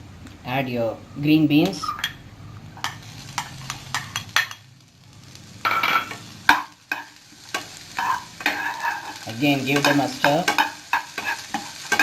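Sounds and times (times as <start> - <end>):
vegetables sizzling in oil: 1.5 - 12.0
utensil scraping a pan: 5.7 - 12.0.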